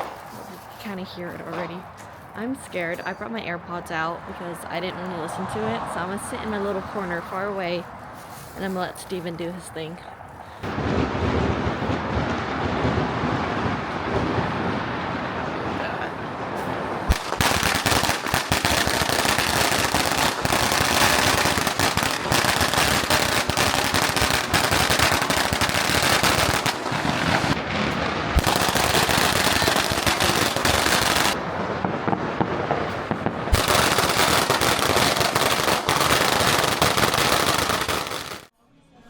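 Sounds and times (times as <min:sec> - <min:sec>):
firecrackers popping: 0:00.0 - 0:02.0, 0:10.6 - 0:38.5.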